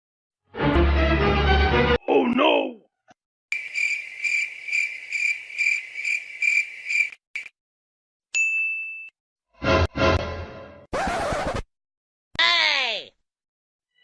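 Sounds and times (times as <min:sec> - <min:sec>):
cricket chirping: 0:03.5 - 0:07.5.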